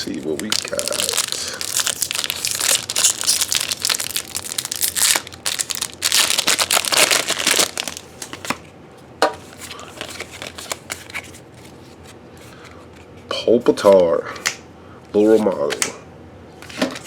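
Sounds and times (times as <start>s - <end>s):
foil wrapper tearing and crinkling: 0.0s - 8.5s.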